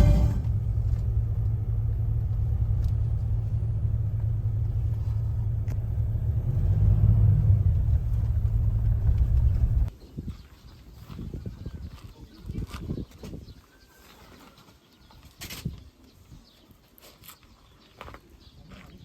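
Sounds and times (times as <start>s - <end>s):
car road and engine rumble: 0.0s - 9.9s.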